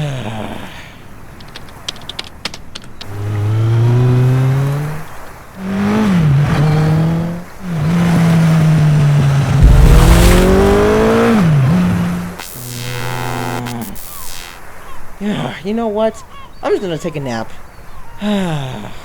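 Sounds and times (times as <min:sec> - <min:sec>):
vehicle engine accelerating: 0:05.6 - 0:12.4.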